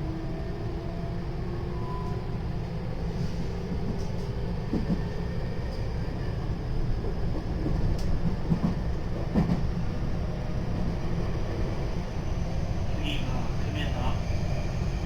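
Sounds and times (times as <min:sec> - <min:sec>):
train wheels rumbling on rail: 0:00.2 - 0:15.0.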